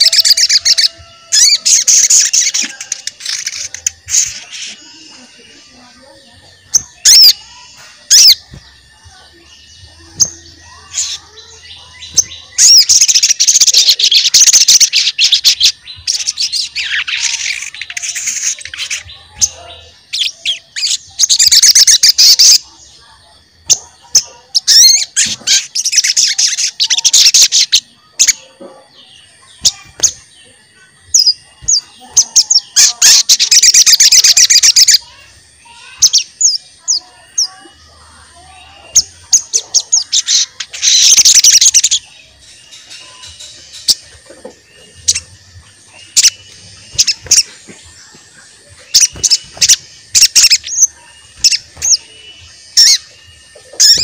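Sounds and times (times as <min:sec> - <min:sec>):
songbird fast high chirps: 0:23.6 - 0:54.0.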